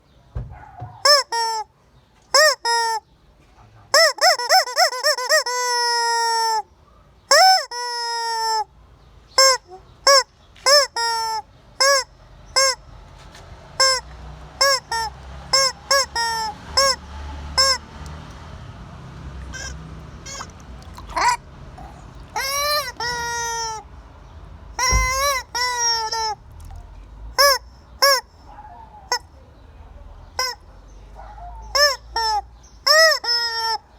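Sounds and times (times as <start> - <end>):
rubber chicken toy squawking: 1.0 - 1.7, 2.3 - 3.0, 3.9 - 6.7, 7.3 - 8.7, 9.4 - 12.8, 13.8 - 17.0, 17.6 - 17.9, 19.4 - 23.9, 24.8 - 26.8, 27.4 - 28.4, 30.4 - 30.6, 31.7 - 33.9.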